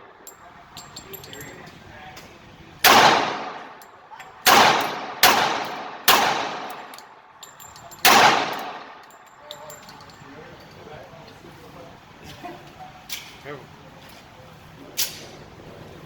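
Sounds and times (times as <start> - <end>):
gunshots echoing indoors: 2.8 - 3.7, 4.4 - 7.0, 8.0 - 9.0.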